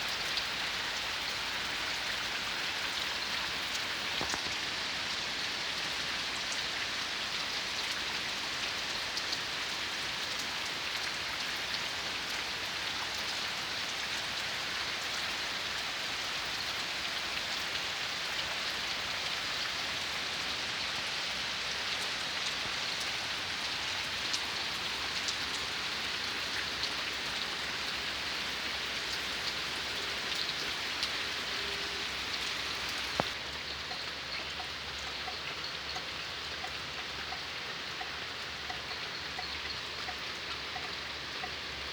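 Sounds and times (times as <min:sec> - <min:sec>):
steady rain falling: 0:00.0 - 0:41.9.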